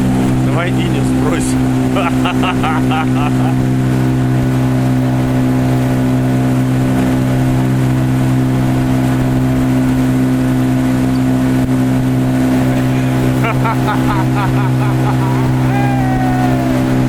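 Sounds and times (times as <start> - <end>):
motor humming: 12.4 - 17.0.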